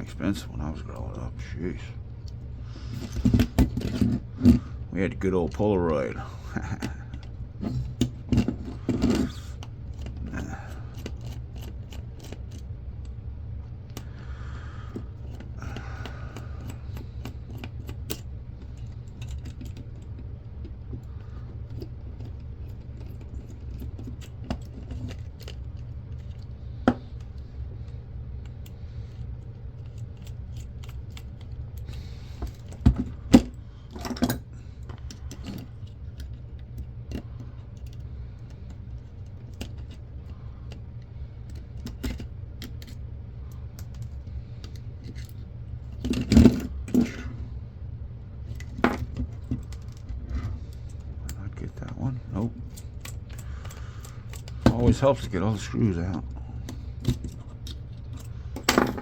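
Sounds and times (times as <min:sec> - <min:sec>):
steady low hum: 0:00.0 - 0:59.0
screwdriver and plastic parts clicking: 0:48.6 - 0:55.5.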